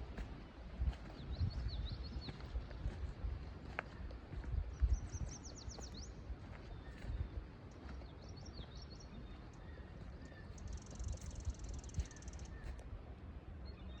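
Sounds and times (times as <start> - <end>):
small birds chirping: 0.9 - 12.9.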